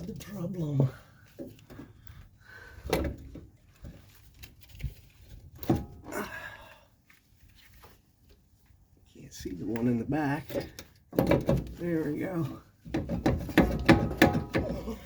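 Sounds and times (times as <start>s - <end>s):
strut assembly knocking and clunking: 10.5s - 11.8s, 12.9s - 15.0s.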